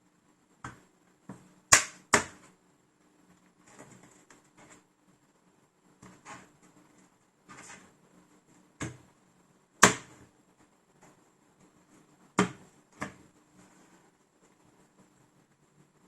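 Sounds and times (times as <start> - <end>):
soft rustling: 12.8 - 16.0.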